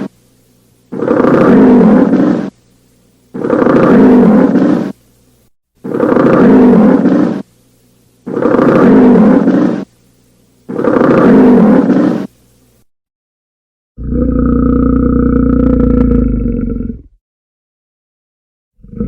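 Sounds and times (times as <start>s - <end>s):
bear roaring: 1.0s - 2.5s, 3.4s - 4.9s, 5.9s - 7.4s, 8.3s - 9.8s, 10.7s - 12.3s, 14.0s - 17.2s, 18.8s - 19.0s.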